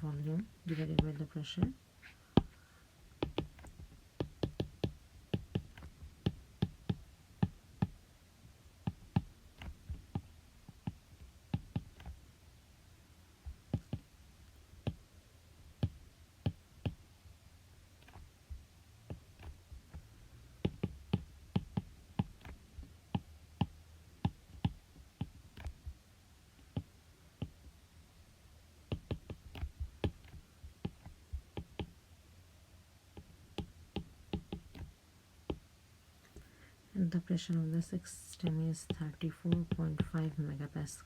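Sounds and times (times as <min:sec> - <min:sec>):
sharp clicks and taps: 0:00.1 - 0:01.8, 0:02.4 - 0:08.0, 0:08.8 - 0:12.2, 0:13.5 - 0:14.1, 0:18.0 - 0:20.0, 0:20.6 - 0:26.0, 0:28.9 - 0:32.0, 0:33.2 - 0:34.9, 0:37.4 - 0:41.0.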